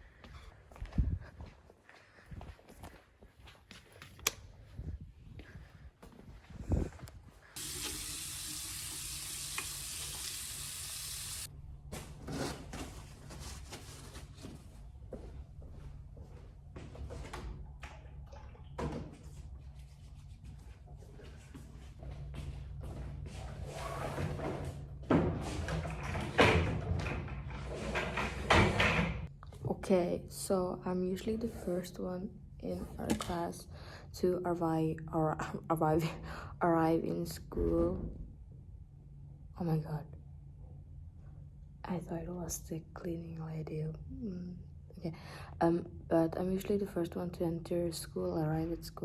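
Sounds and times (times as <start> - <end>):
tap water running into sink: 7.6 - 11.5.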